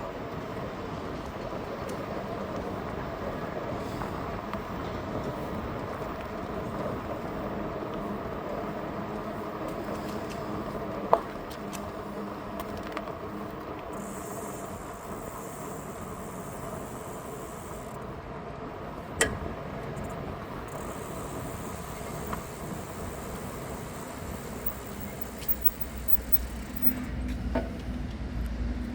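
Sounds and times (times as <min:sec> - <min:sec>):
electric bike mechanical hum: 0:00.0 - 0:28.9.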